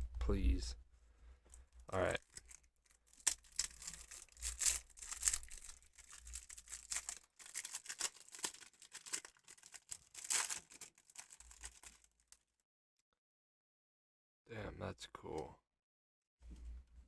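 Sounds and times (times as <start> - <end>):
plastic packaging rustling and tearing: 1.5 - 12.4.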